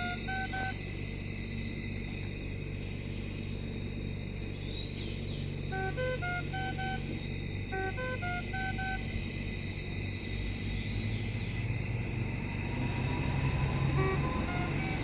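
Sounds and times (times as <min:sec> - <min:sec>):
ventilator alarm beeps: 0:00.0 - 0:02.1, 0:05.2 - 0:11.0, 0:13.6 - 0:15.0
steady low hum: 0:00.0 - 0:15.0.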